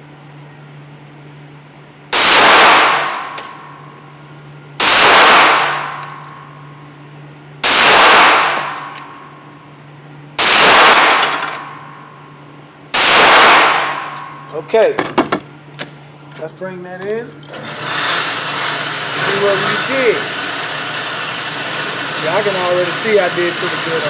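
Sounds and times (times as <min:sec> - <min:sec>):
low ventilation hum: 0:00.0 - 0:24.0
pistol shots reverberating: 0:02.2 - 0:03.6, 0:04.8 - 0:06.1, 0:07.6 - 0:08.8, 0:10.4 - 0:11.9, 0:13.0 - 0:14.1.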